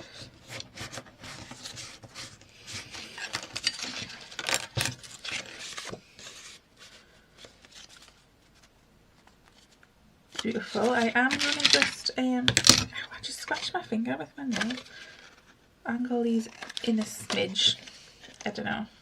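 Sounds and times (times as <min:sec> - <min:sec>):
paper rustling: 0:00.0 - 0:12.7, 0:13.3 - 0:15.6, 0:16.3 - 0:18.7.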